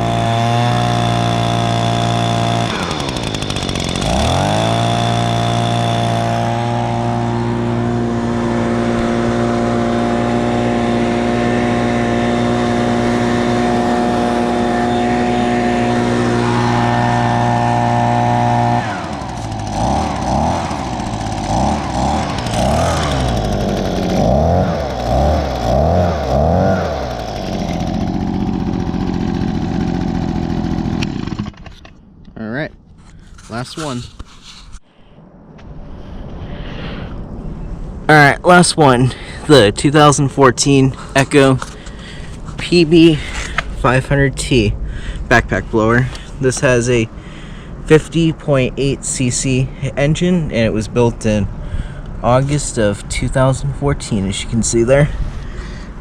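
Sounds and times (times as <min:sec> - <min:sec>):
leaf blower engine revving: 0:00.0 - 0:31.8, 0:40.6 - 0:47.4.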